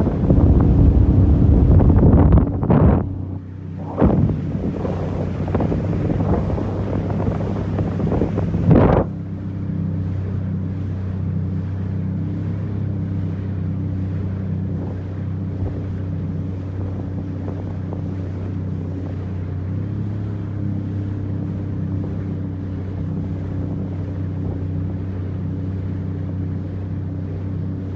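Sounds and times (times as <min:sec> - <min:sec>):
wind and spray on microphone: 0:00.0 - 0:09.2
watercraft engine humming: 0:00.0 - 0:27.9.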